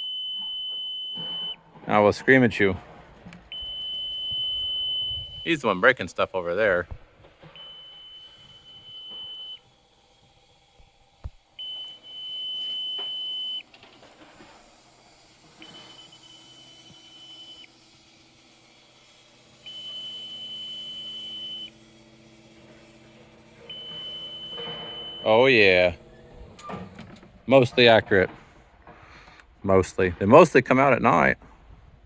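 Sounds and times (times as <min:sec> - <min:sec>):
electronic warning beeps: 0:00.0 - 0:01.6, 0:03.5 - 0:05.8, 0:07.5 - 0:09.6, 0:11.6 - 0:13.6, 0:15.6 - 0:17.7, 0:19.7 - 0:21.8, 0:23.7 - 0:26.0.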